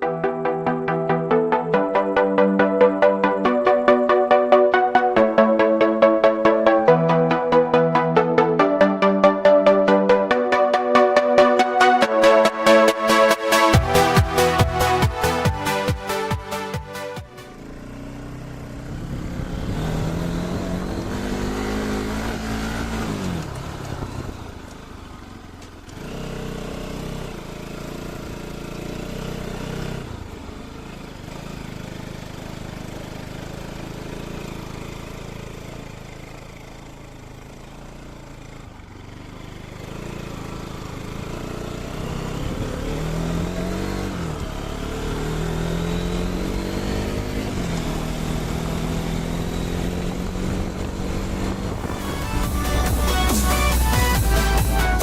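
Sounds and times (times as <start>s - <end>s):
motorcycle engine revving: 17.3s - 55.0s.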